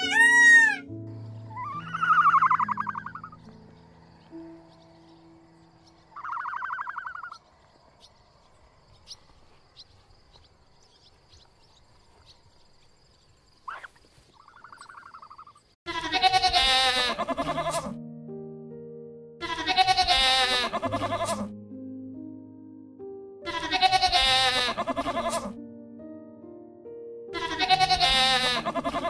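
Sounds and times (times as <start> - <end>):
animal bleating: 0.0 - 0.8, 1.5 - 3.3, 15.9 - 18.0, 19.4 - 21.5, 23.5 - 25.6, 27.4 - 29.0
rapidly pulsed animal call: 0.0 - 3.5, 6.1 - 7.5.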